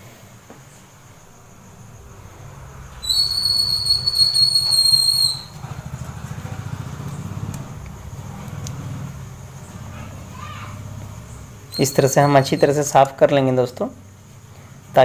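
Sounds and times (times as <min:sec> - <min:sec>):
low pulsing hum: 0:00.7 - 0:11.8.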